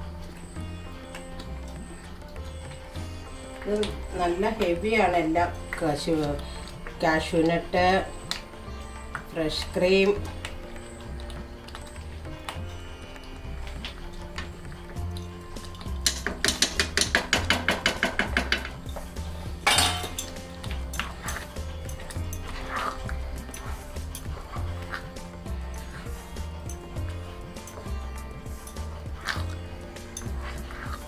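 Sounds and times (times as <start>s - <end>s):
background music with beat: 10.2s - 31.0s
spoon scraping pot: 13.1s - 31.0s
spoon clinking against pot: 15.8s - 31.0s.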